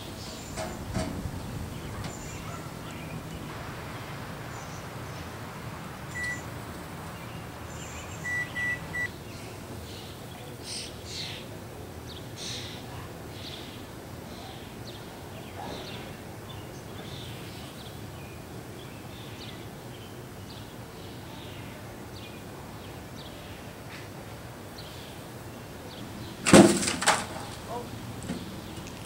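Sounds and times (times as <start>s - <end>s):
faint bird chirps: 6.1s - 6.5s, 7.8s - 9.1s.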